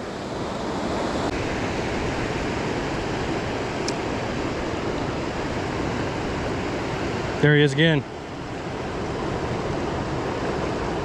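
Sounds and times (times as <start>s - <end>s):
river water rushing: 0.0s - 11.0s.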